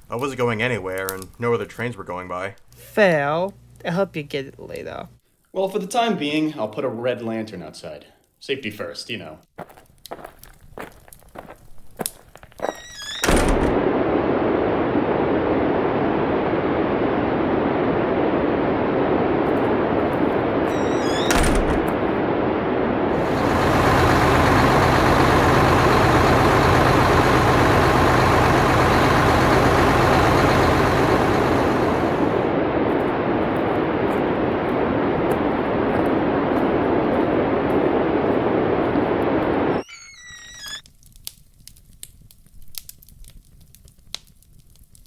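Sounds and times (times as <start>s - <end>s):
low steady hum: 13.3s - 39.8s
loud steady rushing noise: 23.1s - 39.8s.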